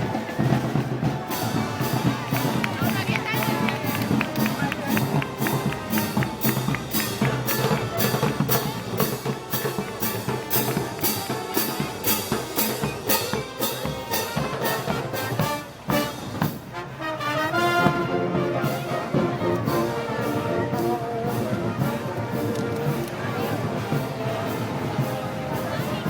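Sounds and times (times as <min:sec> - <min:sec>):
drum and cymbal beat: 0:00.0 - 0:16.8
brass band march: 0:00.0 - 0:26.0.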